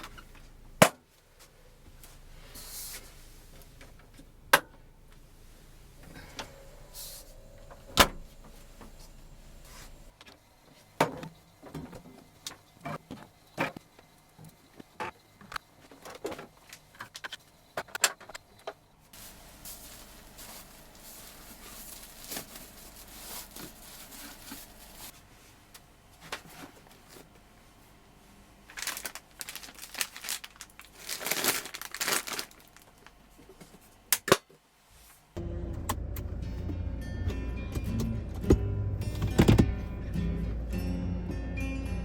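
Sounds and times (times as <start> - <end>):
packaging crinkling and rustling: 19.2 - 25.2, 28.7 - 33.8.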